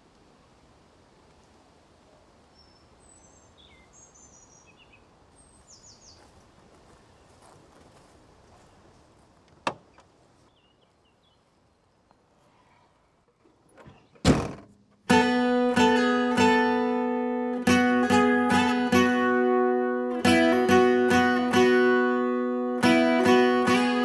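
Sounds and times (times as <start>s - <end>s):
bird chirps: 2.6s - 6.3s.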